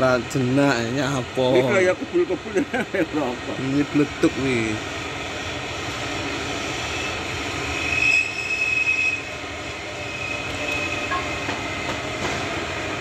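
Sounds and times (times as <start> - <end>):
steady rumbling noise: 0.0 - 7.9
high-pitched squeal: 6.4 - 11.5.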